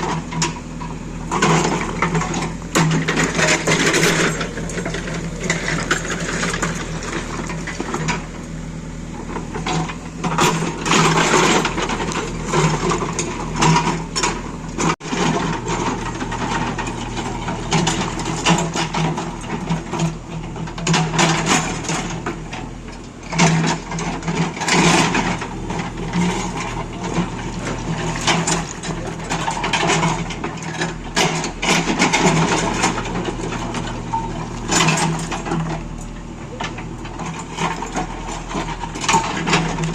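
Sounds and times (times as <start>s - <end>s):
diesel engine running: 0.0s - 39.9s
scraping and crunching: 9.2s - 39.9s.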